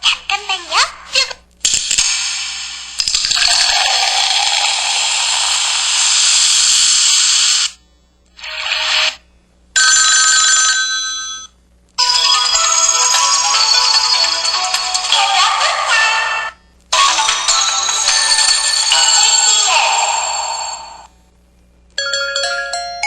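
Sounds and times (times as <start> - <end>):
hiss-like phone sound effect: 1.7 - 3.8, 4.4 - 7.8
phone ringtone melody: 9.8 - 15.2, 17.0 - 21.1, 22.0 - 23.0.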